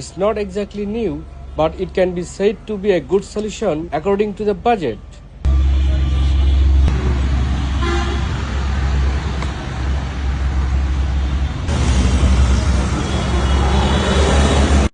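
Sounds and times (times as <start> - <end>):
vehicle engine rumble: 0.0 - 14.9
road noise hiss: 5.2 - 14.9.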